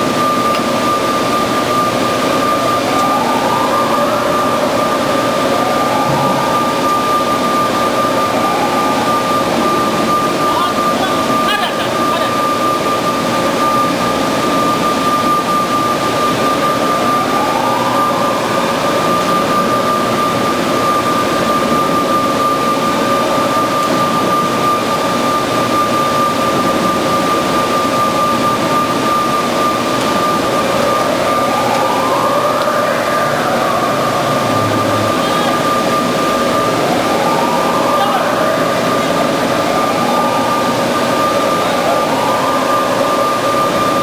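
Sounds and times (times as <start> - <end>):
band saw whining: 26.4 - 44.0.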